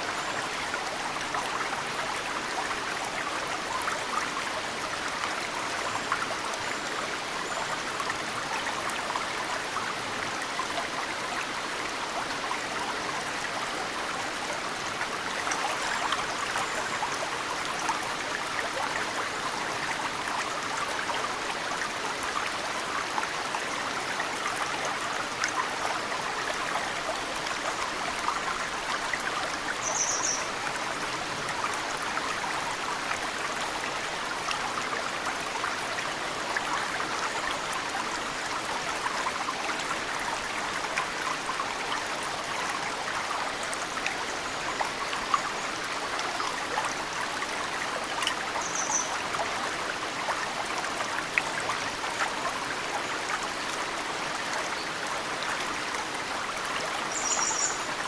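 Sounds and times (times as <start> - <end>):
mountain stream running: 0.0 - 58.0
bird chirp: 29.8 - 30.5.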